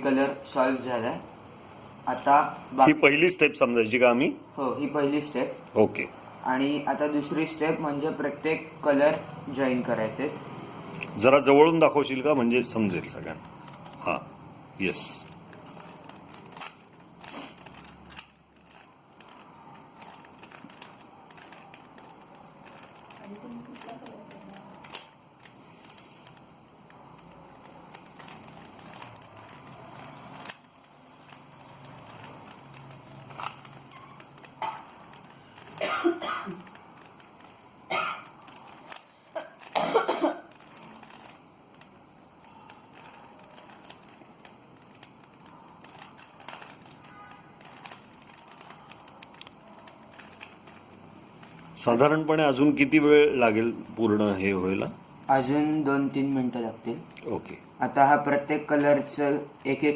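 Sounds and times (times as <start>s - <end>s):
puzzle cube clicking and rattling: 11.0s - 59.9s
person coughing: 35.8s - 36.6s, 39.4s - 40.5s.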